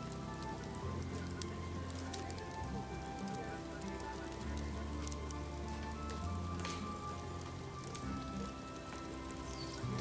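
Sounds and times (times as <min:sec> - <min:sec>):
bark burning crackling: 0:00.0 - 0:10.0
soft music of long notes: 0:00.0 - 0:10.0.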